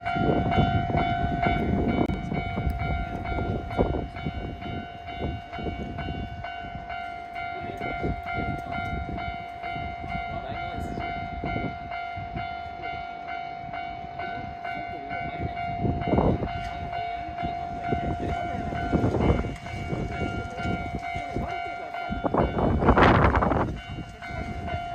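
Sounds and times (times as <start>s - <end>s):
level crossing warning bell: 0.0s - 24.9s
train passing with low rumble: 0.0s - 24.9s
wheels clacking over rail joints: 16.4s - 24.9s.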